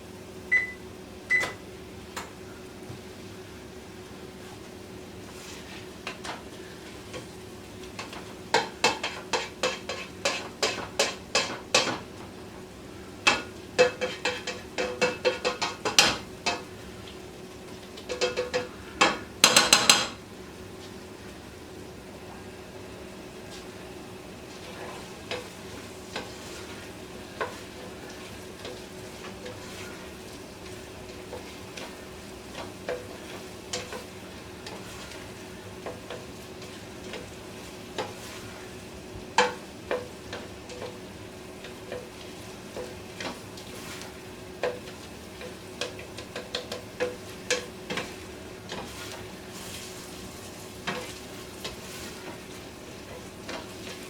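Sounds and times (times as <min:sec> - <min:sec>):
onions sizzling in butter: 0:02.7 - 0:54.0
spoon knocking against pot: 0:18.1 - 0:20.2.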